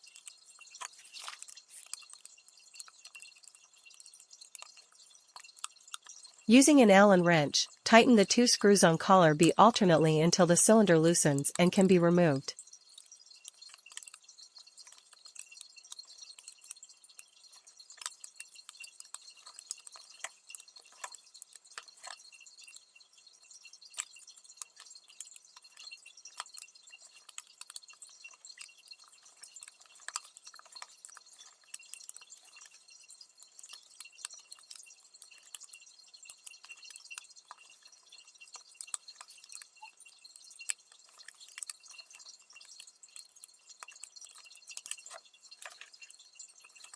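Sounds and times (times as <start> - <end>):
small metal clicks and taps: 0.0 - 6.3, 23.8 - 46.9.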